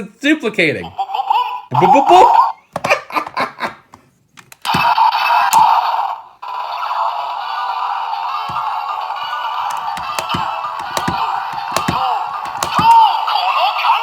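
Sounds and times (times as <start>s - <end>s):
plastic clicks: 2.7s - 5.9s, 8.4s - 13.1s.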